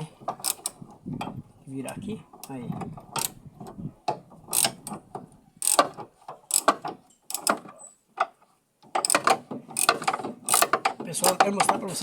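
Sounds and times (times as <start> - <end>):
ratchet wrench clicking: 4.5 - 5.0, 5.6 - 5.9, 6.5 - 7.6, 9.0 - 11.4.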